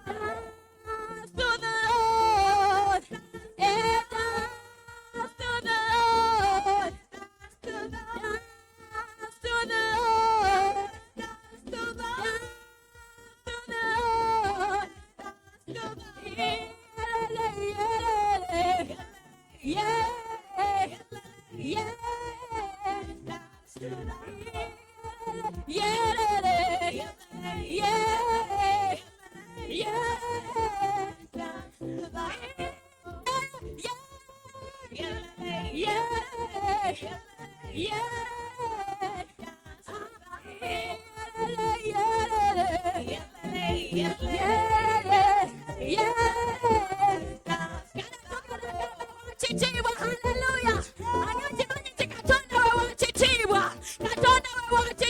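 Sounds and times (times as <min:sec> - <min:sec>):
person singing: 0:00.0 - 0:55.0.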